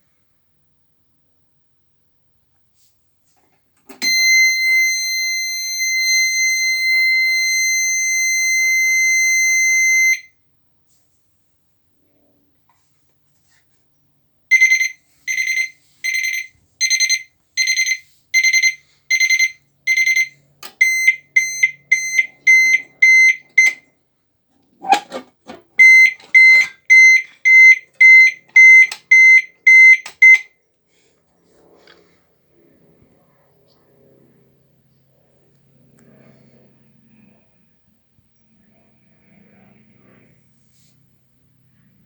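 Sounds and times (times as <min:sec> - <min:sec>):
alarm panel buzzer beeping: 0:03.9 - 0:10.3, 0:14.5 - 0:23.8, 0:24.8 - 0:30.5
clunk: 0:24.8 - 0:27.0.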